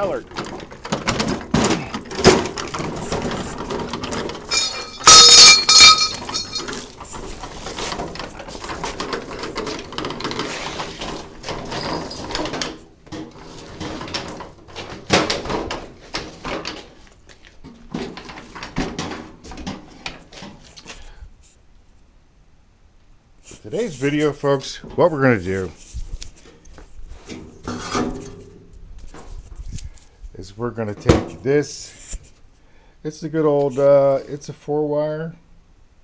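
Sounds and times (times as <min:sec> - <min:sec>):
objects knocking and rattling: 0:00.0 - 0:21.0.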